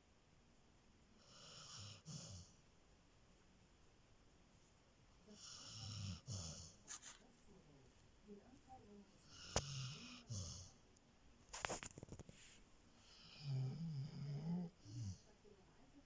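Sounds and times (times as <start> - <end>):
person snoring: 13.1 - 15.2.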